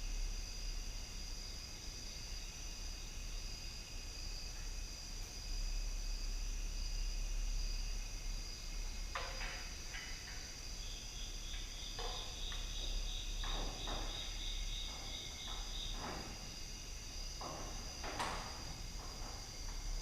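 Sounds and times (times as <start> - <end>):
crickets chirping: 0.0 - 20.0
handling knocks and rustles: 8.9 - 20.0.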